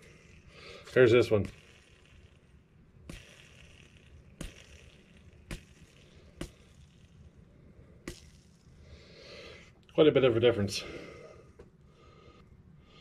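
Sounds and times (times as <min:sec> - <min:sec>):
low room hum: 0:00.0 - 0:13.0.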